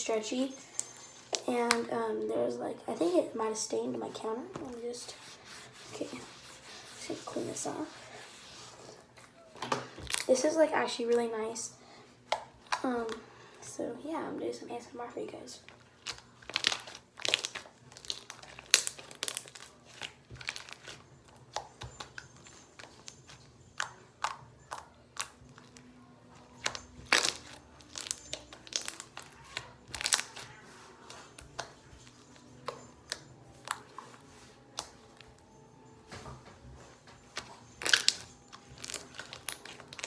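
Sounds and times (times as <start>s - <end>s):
slime squished by hand: 37.4s - 40.0s.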